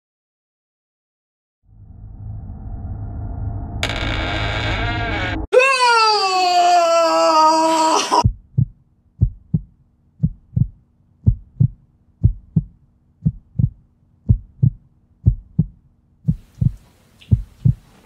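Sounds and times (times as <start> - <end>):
heartbeat double thumps: 8.2 - 17.9.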